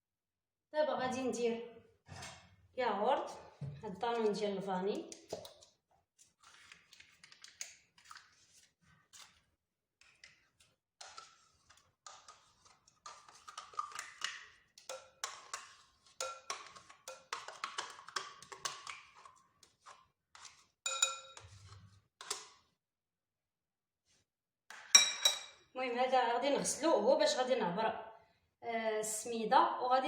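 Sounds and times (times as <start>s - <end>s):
utensil stirring batter in bowl: 3.2s - 22.8s
utensil clinking against bowl: 16.2s - 18.8s, 20.9s - 21.5s, 25.0s - 25.6s.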